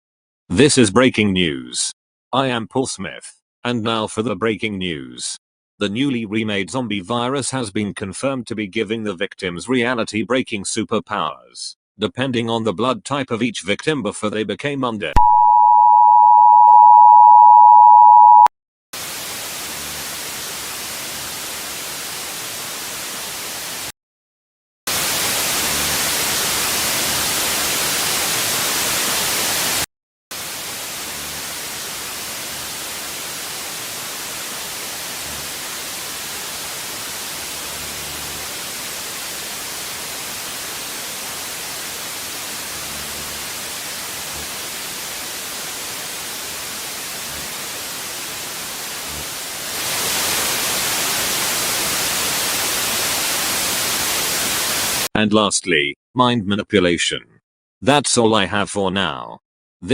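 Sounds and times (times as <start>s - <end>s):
two-tone alert tone: 15.2s - 18.5s
static hiss: 19.0s - 23.9s, 30.4s - 55.1s.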